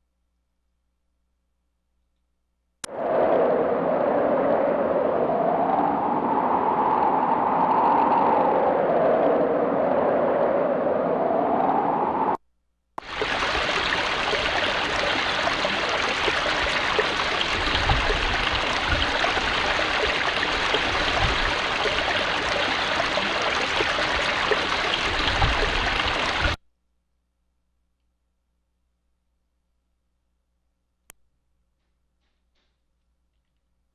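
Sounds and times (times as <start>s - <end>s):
stream-like hiss with crackle: 2.8s - 12.4s, 13.0s - 26.6s.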